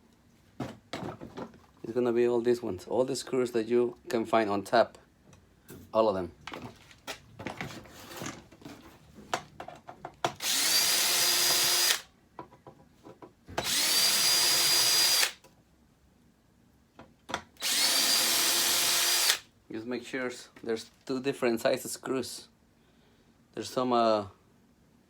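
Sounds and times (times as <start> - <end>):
power drill spinning: 10.4 - 12.1, 13.6 - 15.4, 17.6 - 19.4.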